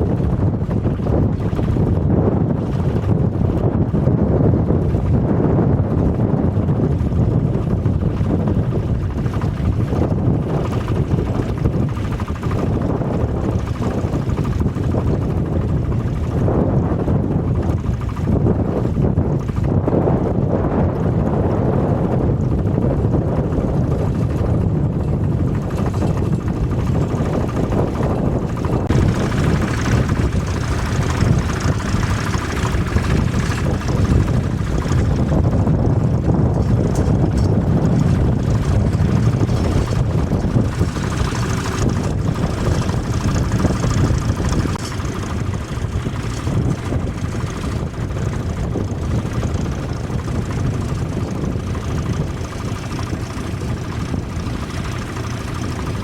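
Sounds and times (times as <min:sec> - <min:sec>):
tractor engine running: 0:00.0 - 0:56.0
wind buffeting microphone: 0:00.0 - 0:56.0.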